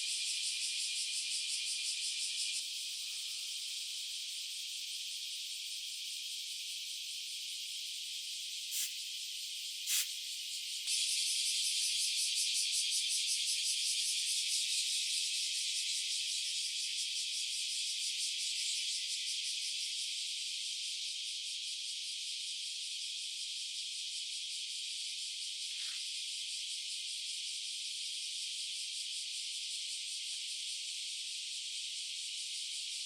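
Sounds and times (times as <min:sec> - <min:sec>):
high-pitched hiss: 0:08.7 - 0:09.0, 0:09.9 - 0:10.2.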